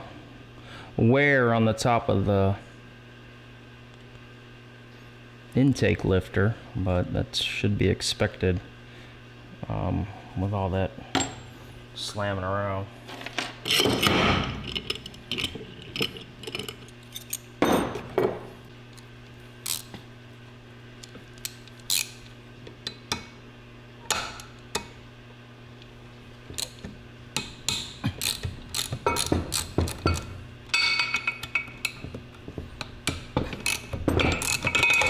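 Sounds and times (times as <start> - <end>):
steady low hum: 0.0 - 35.0
metal engine parts and tools clinking: 13.2 - 18.2, 27.4 - 35.0.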